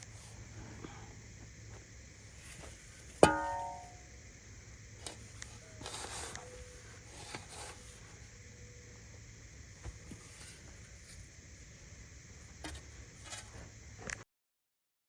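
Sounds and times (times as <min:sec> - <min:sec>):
sharp metallic clang: 0:03.2 - 0:04.0.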